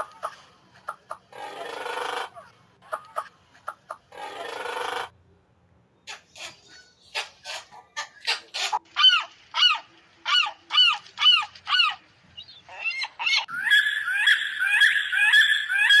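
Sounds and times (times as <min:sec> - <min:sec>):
birds calling: 0:06.0 - 0:16.0.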